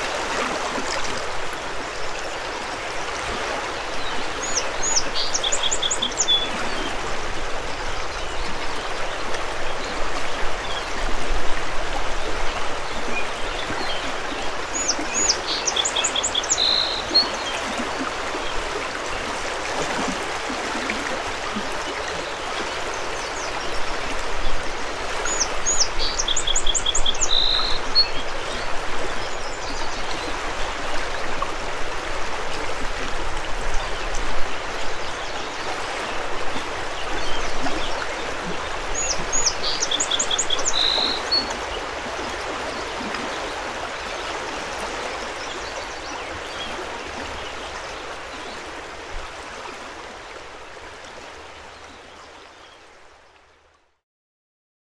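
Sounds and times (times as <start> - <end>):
river water rushing: 0.0 - 52.6
songbird singing: 14.8 - 17.6, 25.2 - 30.2, 37.0 - 41.8.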